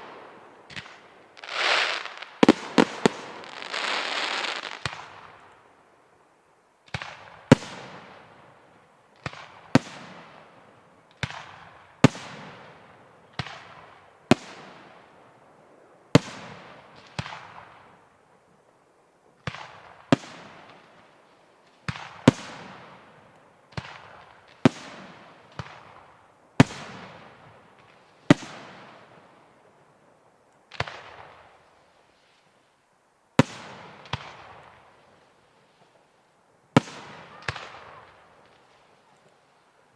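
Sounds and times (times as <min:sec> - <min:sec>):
firework bangs: 0:00.0 - 0:05.3.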